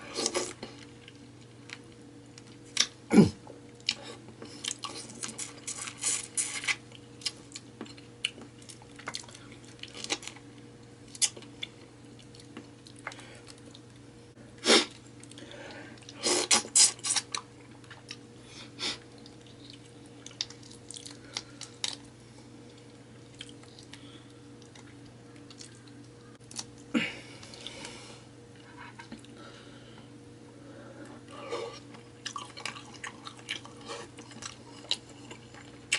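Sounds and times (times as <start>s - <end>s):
faint steady hum: 0.0s - 35.9s
chewing and crunching seafood: 3.6s - 14.1s, 19.0s - 27.9s, 31.0s - 35.9s.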